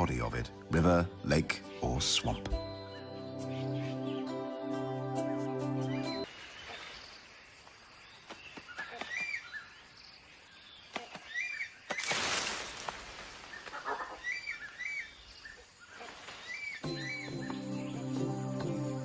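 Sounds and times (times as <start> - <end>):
bird chirping: 13.4 - 19.0.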